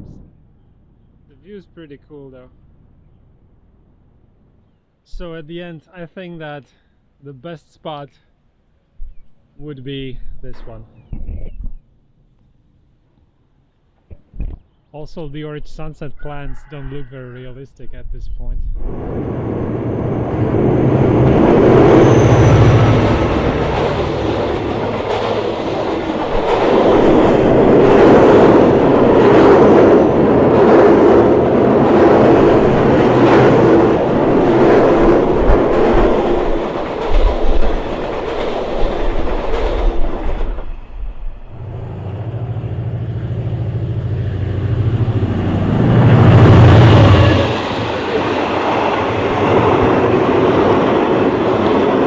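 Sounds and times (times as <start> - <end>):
low engine drone: 18.8 - 27.9, 41.4 - 50.3
train wheels clicking over rail joints: 21.2 - 40.8.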